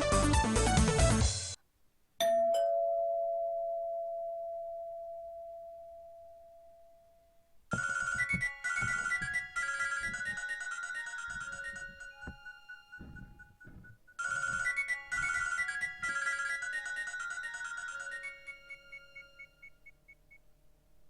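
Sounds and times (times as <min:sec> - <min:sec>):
two-note phone chime: 0:07.7 - 0:19.6
beeping ringtone melody: 0:07.7 - 0:19.8.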